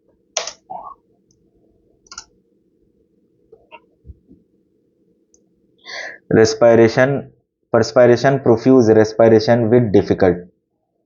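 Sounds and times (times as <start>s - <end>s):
short breath hiss: 5.8s - 6.2s.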